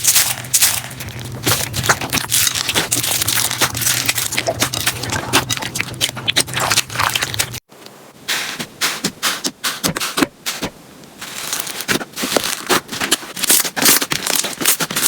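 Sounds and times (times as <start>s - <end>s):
crunchy slime crackling: 0.0s - 7.6s, 11.2s - 15.0s
low steady hum: 0.0s - 8.3s.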